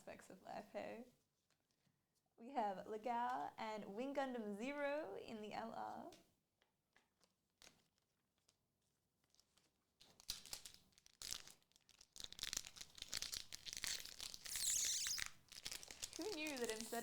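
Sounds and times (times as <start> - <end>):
foil pack tearing and crinkling: 9.3 - 17.0
cards clicking: 12.2 - 17.0.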